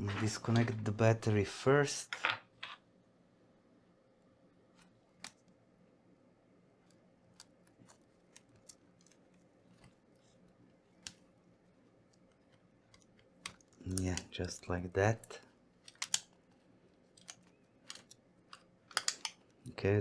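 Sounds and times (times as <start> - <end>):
faint clicks and taps on laptop: 4.8 - 5.6, 15.2 - 19.5.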